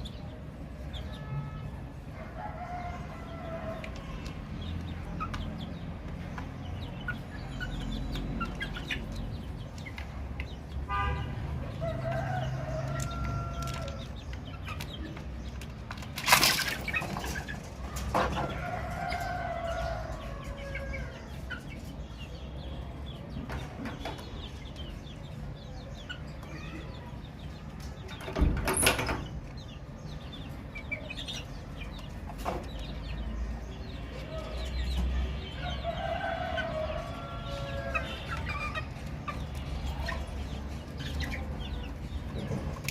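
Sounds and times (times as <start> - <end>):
chicks peeping: 0.0 - 42.9
hen clucking: 34.4 - 42.9.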